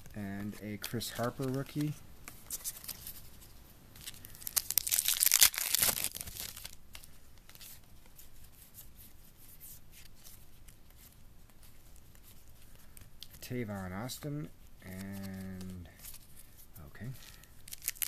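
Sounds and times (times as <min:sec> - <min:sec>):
cards rustling: 0:00.0 - 0:18.0
wrapper tearing and crinkling: 0:04.0 - 0:06.8, 0:17.3 - 0:18.0.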